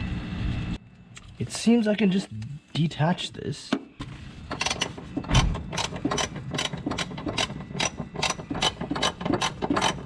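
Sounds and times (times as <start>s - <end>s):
ratchet wrench clicking: 5.7s - 10.0s.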